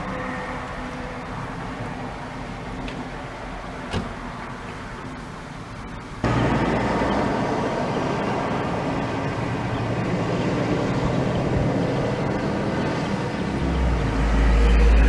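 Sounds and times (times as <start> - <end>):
engine drone: 6.2 - 15.0
deep low rumble: 13.6 - 15.0.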